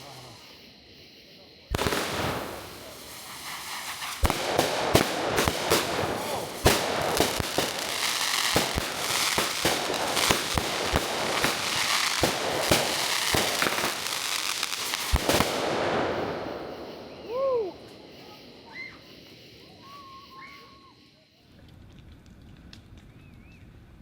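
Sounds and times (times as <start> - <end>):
firework crackling and bangs: 1.7 - 17.9.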